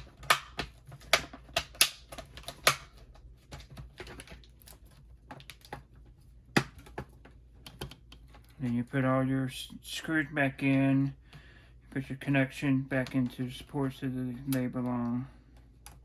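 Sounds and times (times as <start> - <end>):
plastic parts clicking and snapping: 0.0 - 8.6.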